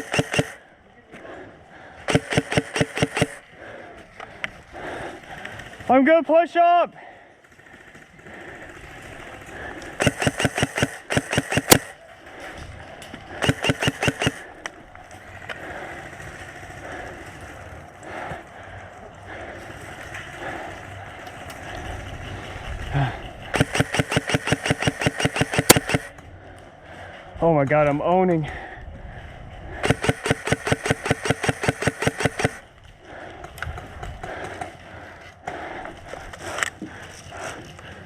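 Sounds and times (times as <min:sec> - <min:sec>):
airsoft gun firing bursts: 0:00.0 - 0:00.6, 0:02.1 - 0:03.4, 0:07.5 - 0:12.0, 0:13.3 - 0:14.6, 0:23.5 - 0:26.2, 0:29.8 - 0:32.7.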